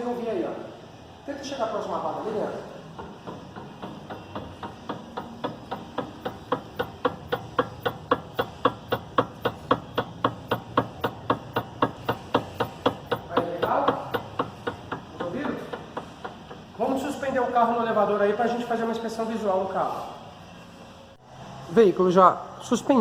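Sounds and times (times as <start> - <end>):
car suspension knocking: 2.8 - 17.3.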